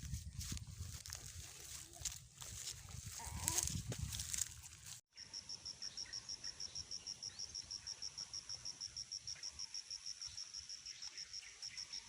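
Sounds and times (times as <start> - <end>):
insect chirping: 5.1 - 12.0.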